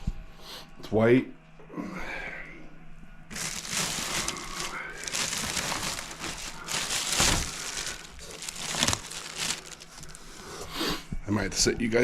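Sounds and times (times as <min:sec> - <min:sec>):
packaging crinkling and rustling: 0:03.3 - 0:10.5.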